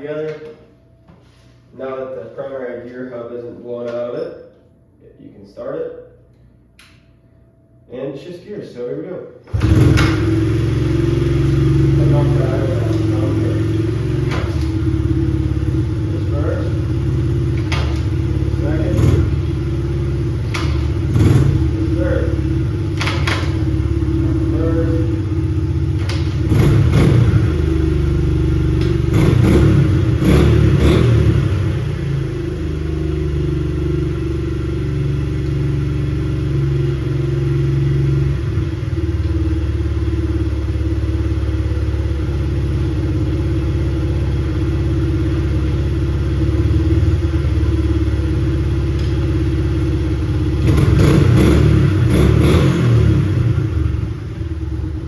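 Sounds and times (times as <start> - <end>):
dirt bike engine revving: 9.5 - 32.7, 50.5 - 54.5.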